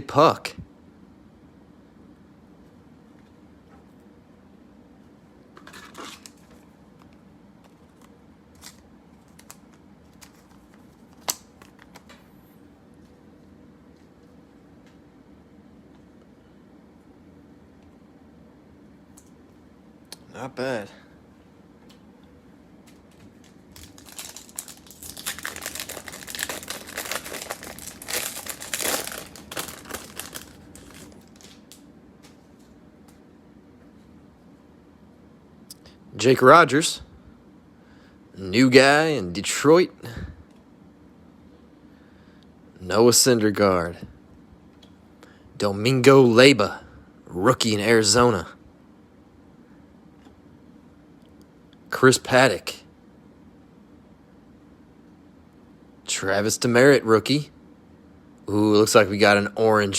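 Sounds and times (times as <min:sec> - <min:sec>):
foil wrapper crinkling: 0:07.7 - 0:12.1, 0:23.1 - 0:31.8.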